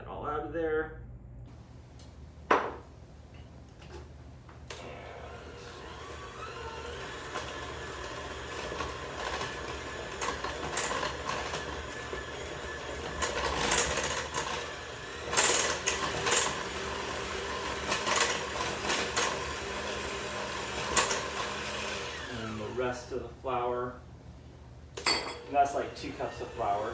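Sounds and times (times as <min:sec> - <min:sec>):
electric mixer motor running: 0:04.7 - 0:23.1, 0:25.0 - 0:26.9.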